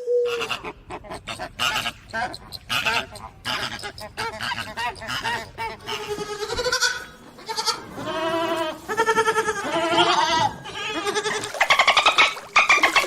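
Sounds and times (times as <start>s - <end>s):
livestock bleating: 5.9s - 11.6s.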